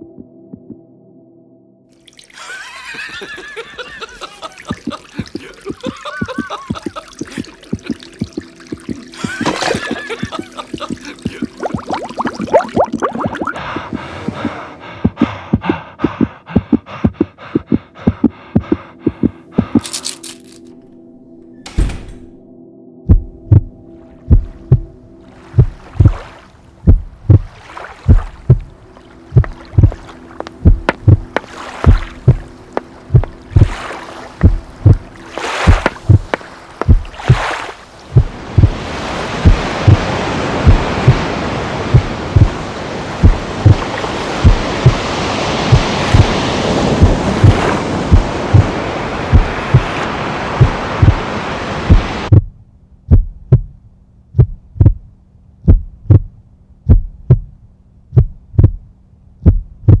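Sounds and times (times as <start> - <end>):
heartbeat-like low thumps: 0.0 - 0.9, 13.2 - 19.8, 23.0 - 25.0, 25.6 - 33.8, 34.4 - 35.1, 35.7 - 37.5, 38.1 - 41.3, 41.9 - 42.6, 43.2 - 45.1, 45.7 - 50.0, 50.6 - 51.3, 51.9 - 60.0.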